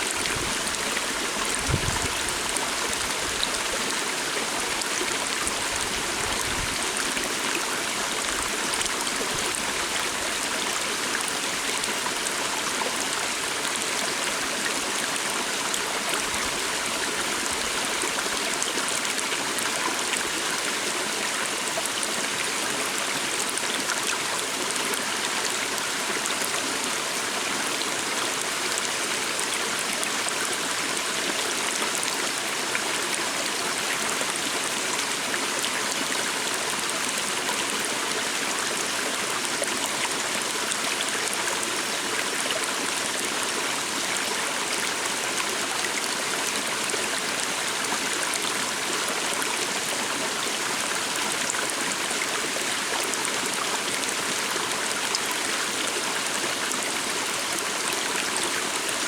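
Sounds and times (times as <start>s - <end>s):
stream of water flowing: 0.0s - 59.0s.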